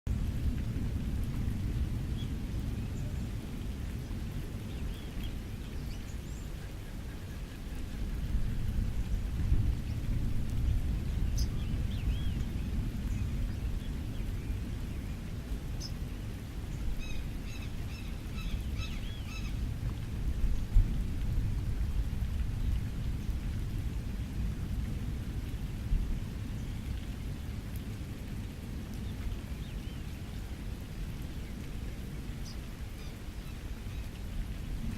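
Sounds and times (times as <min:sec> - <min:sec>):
rain on a beach: 0:00.0 - 0:34.9
steady low rumble: 0:00.1 - 0:34.9.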